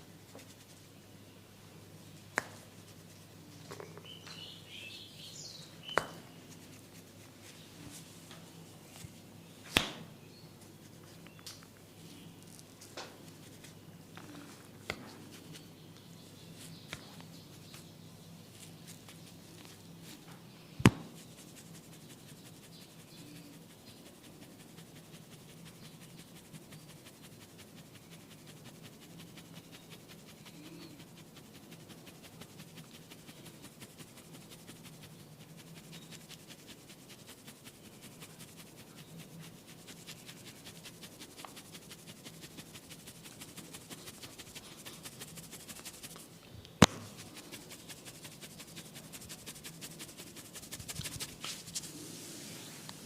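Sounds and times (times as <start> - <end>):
rubbing and scratching of hair: 0.0 - 1.0, 2.0 - 9.4, 10.6 - 53.0
sharp snap: 9.7 - 10.1, 20.8 - 21.2, 46.8 - 47.2.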